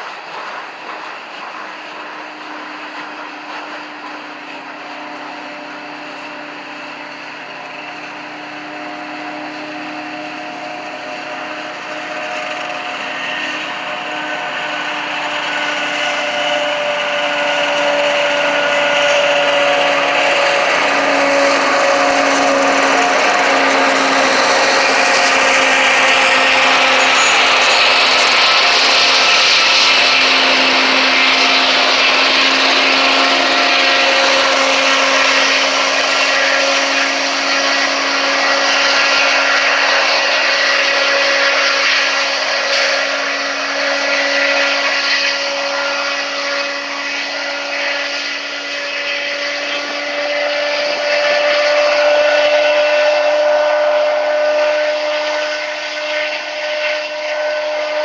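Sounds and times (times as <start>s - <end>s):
freight train running noise: 0.0s - 58.0s
train wheels squealing on rails: 0.0s - 58.0s.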